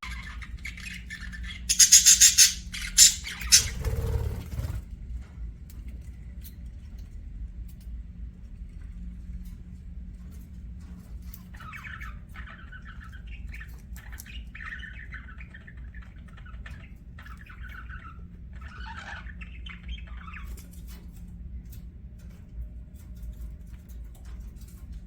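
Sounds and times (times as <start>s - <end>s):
budgerigars chattering and warbling: 0.0s - 4.8s, 11.6s - 20.6s.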